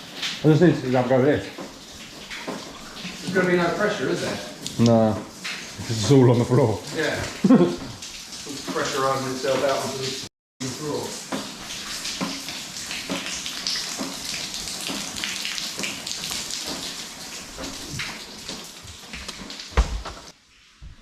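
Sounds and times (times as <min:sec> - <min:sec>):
water running and spattering: 0:00.0 - 0:21.0
dull thump: 0:19.7 - 0:20.3.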